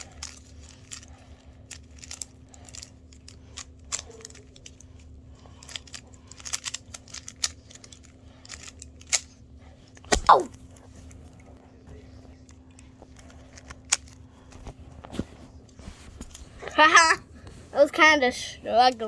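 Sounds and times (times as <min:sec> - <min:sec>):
plastic cube clicking: 0:01.7 - 0:09.3.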